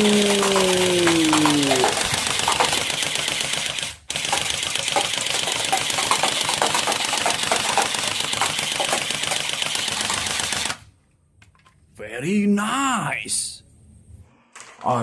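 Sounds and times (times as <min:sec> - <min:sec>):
toy gun rattling clicks: 0:00.0 - 0:10.9.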